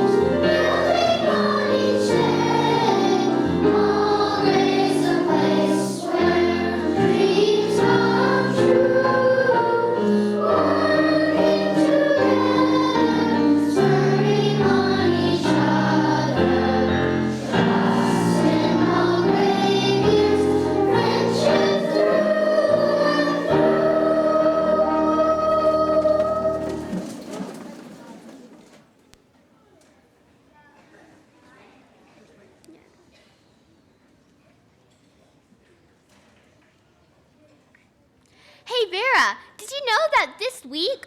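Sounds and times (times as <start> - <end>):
students singing together: 0.0 - 28.6.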